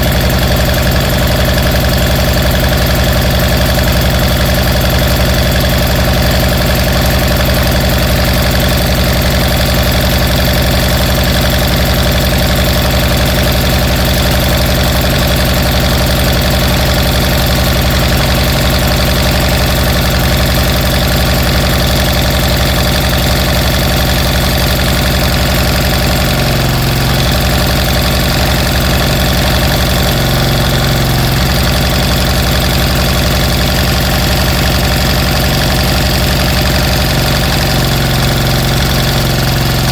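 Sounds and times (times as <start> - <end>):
small engine running: 0.0 - 39.9.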